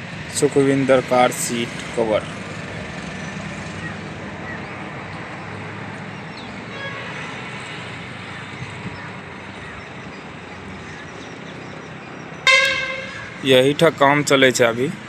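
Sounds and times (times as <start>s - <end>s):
street traffic noise: 0.0s - 15.0s
vehicle horn honking: 6.7s - 7.3s, 12.4s - 13.6s.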